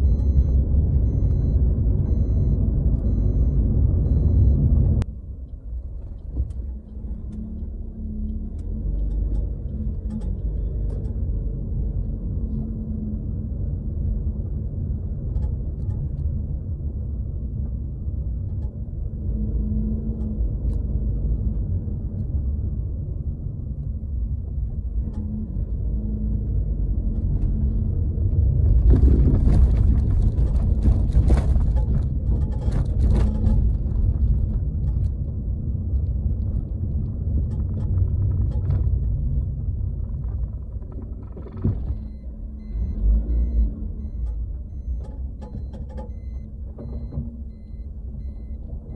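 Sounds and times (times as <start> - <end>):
road and tyre rumble: 0.0 - 48.9
sharp clicks and knocks: 36.0 - 48.9.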